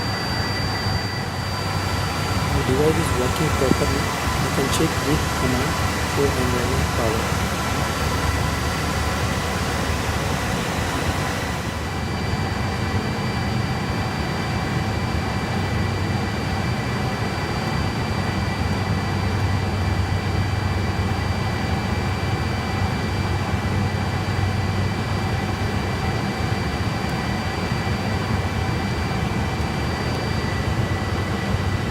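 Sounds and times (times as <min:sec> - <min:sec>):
thin high whining tones: 0:00.0 - 0:07.2
cooling fans rushing: 0:00.0 - 0:14.1, 0:18.5 - 0:31.9.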